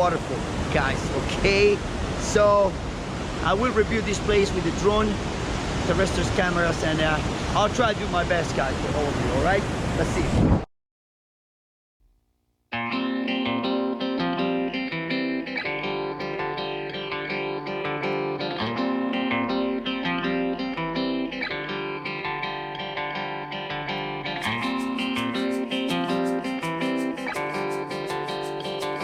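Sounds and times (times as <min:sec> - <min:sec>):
plucked guitar music: 0:12.7 - 0:29.0
fast high ticking percussion: 0:24.4 - 0:29.0.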